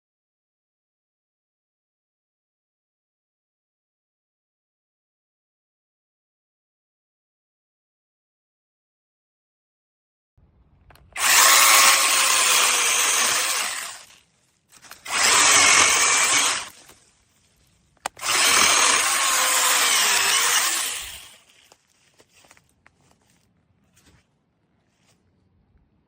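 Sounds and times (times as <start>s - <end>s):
electric chainsaw running: 11.2s - 14.1s, 14.9s - 16.8s, 18.1s - 21.5s.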